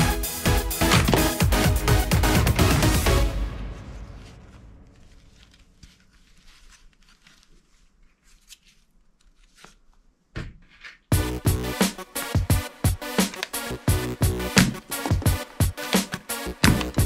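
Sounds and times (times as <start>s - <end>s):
background music: 0.0s - 5.2s, 11.1s - 17.0s
packaging crinkling: 4.9s - 9.9s.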